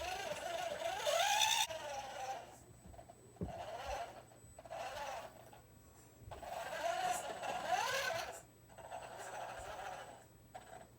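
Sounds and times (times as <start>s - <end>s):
electric motor whine: 0.0s - 2.6s.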